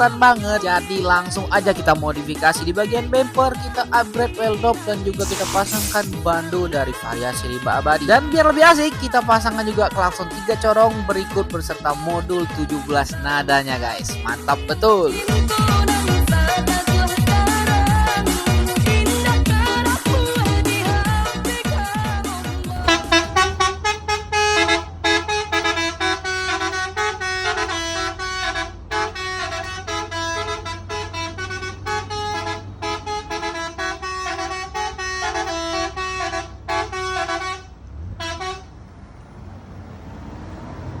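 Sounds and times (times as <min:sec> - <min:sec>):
truck horn playing a fast tune: 0:18.1 - 0:38.7.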